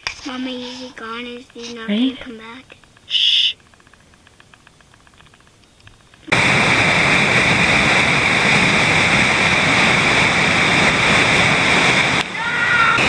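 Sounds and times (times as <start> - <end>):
whitewater rushing: 6.3 - 13.0.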